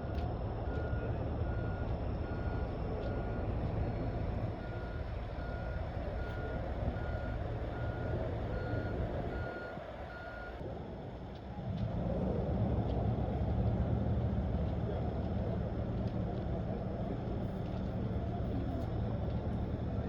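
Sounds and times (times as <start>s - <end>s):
reversing alarm beeping: 0.0s - 10.6s
heavy vehicle engine running: 0.0s - 20.0s.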